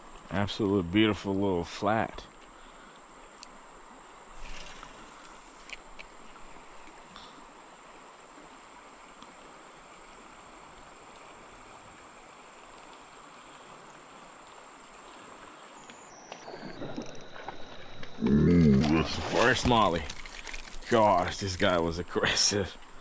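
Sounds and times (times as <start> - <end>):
river water flowing: 0.0 - 23.0
faint high-pitched tone: 15.2 - 20.0
loud irregular noises: 16.8 - 20.8.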